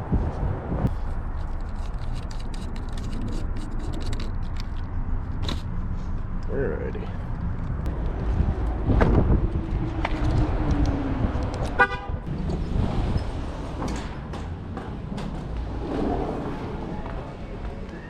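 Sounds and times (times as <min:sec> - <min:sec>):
traffic rumble: 0:00.0 - 0:18.0
wind: 0:00.0 - 0:18.0
vehicle passing: 0:05.8 - 0:18.0
car horn beep: 0:11.8 - 0:12.2.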